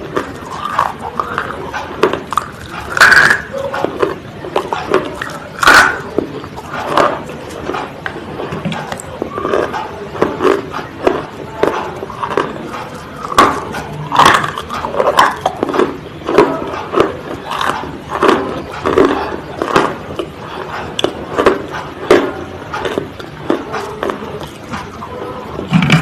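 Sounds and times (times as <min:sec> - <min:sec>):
brittle crunching: 0:00.1 - 0:07.9, 0:08.6 - 0:20.3.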